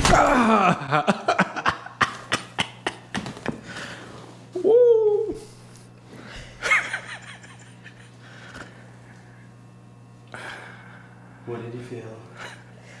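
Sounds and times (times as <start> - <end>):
steady low hum: 0.0 - 13.0
faint breath: 10.3 - 11.4.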